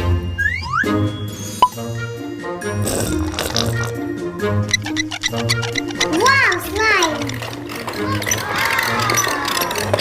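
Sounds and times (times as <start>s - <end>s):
playful background music: 0.0s - 10.0s.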